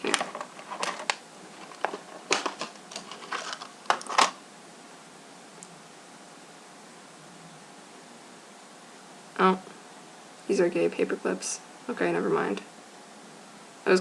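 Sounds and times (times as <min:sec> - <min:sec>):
small objects clicking and rustling: 0:00.0 - 0:04.4
faint room hiss: 0:00.0 - 0:14.0.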